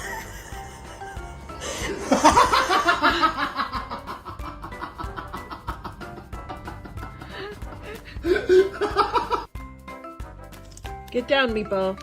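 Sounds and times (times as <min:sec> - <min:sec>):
person laughing: 0:00.0 - 0:09.5
background music: 0:00.0 - 0:12.0.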